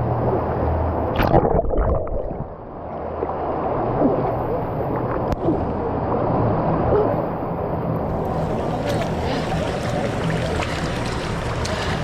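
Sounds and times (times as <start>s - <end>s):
water rushing and splashing: 8.0s - 12.0s.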